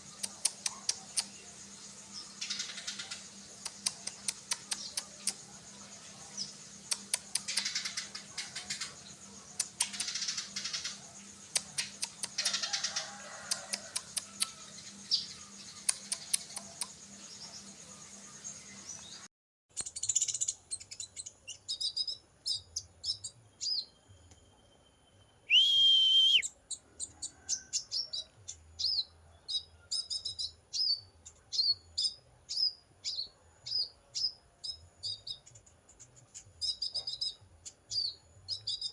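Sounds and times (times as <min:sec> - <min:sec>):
small birds chirping: 0:00.0 - 0:38.9
loud whistled note: 0:25.5 - 0:26.4.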